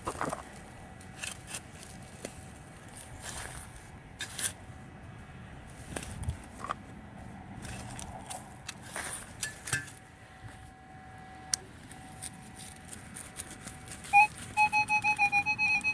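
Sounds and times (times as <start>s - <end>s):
digging tool scraping soil: 0.0s - 4.6s.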